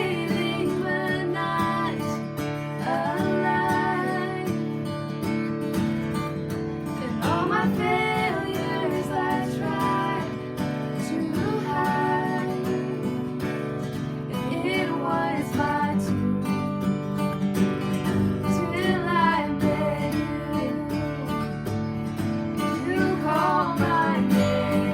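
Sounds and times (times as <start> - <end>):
person singing: 0.0 - 4.8, 7.0 - 13.2, 14.3 - 16.5, 18.5 - 21.5, 22.6 - 24.9
acoustic guitar strumming: 0.0 - 24.9.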